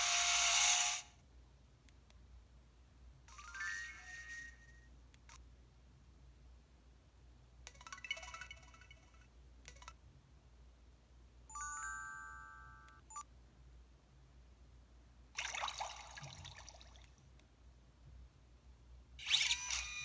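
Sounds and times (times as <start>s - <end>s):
held electronic chime: 11.5s - 13.2s
short phone chime: 11.5s - 13.2s.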